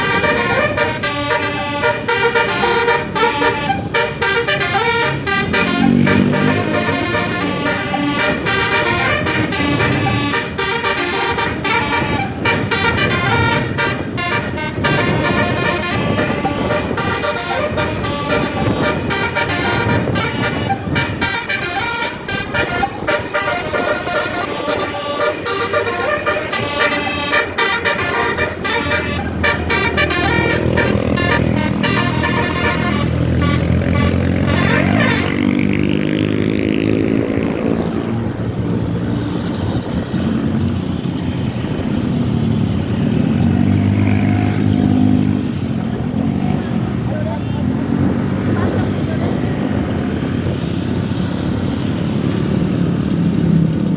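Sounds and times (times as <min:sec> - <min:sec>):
musical air horn playing tune: 0:00.0 - 0:35.9
bus engine drone: 0:00.0 - 0:53.9.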